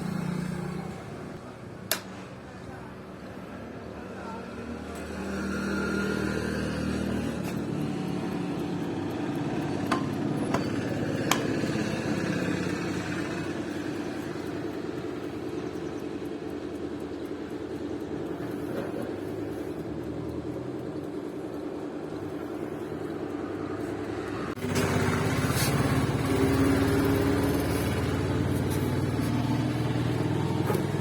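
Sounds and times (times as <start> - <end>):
sharp clicks: 1.9 - 2.2
low motor hum: 4.3 - 31.0.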